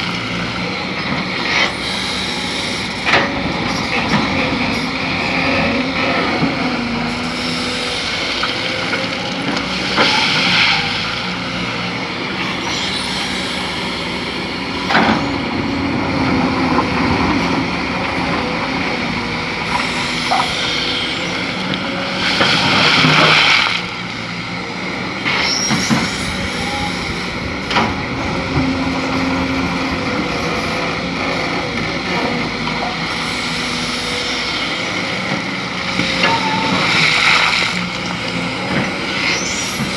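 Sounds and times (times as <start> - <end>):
diesel excavator running: 0.0 - 39.9.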